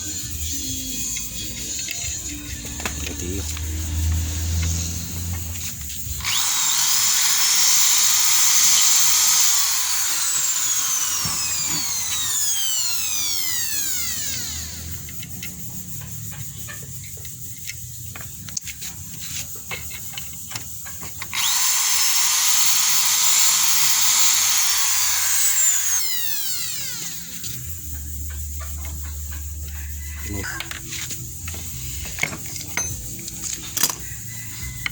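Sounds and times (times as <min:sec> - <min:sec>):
power tool motor whirring: 0:00.0 - 0:16.0, 0:21.2 - 0:27.8.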